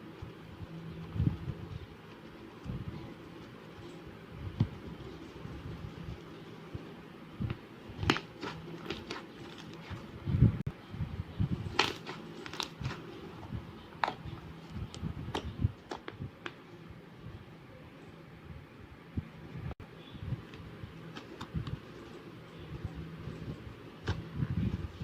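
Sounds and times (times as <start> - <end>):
slime being squished by hand: 11.6 - 13.0.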